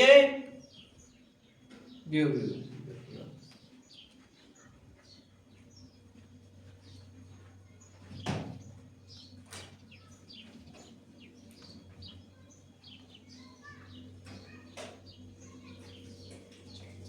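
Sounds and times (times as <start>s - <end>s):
small birds chirping: 0.0s - 17.0s
steady low hum: 1.4s - 17.0s
thump: 8.1s - 8.6s.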